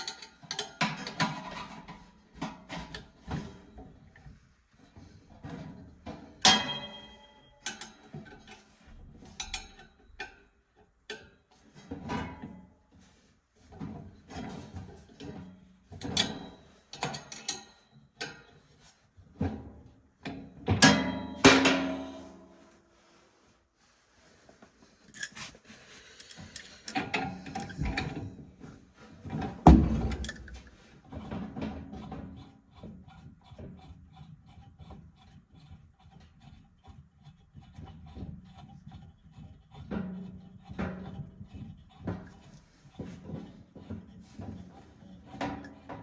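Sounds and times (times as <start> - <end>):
metal parts clinking and clattering: 25.1 - 25.5.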